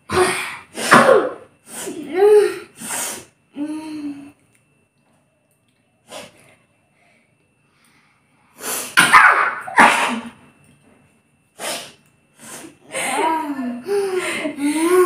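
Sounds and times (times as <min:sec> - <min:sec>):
person sneezing: 0:00.1 - 0:02.0, 0:08.6 - 0:10.4
sharp intake of breath: 0:02.8 - 0:03.3, 0:07.0 - 0:09.0, 0:11.6 - 0:12.8.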